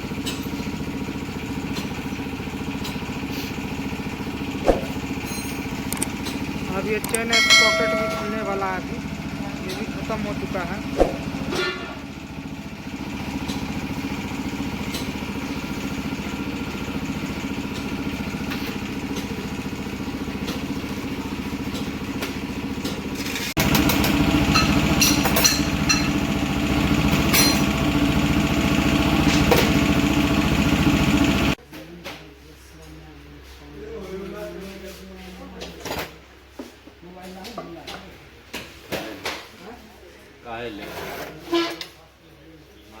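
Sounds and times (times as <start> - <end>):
motorcycle engine idling: 0.0 - 31.6.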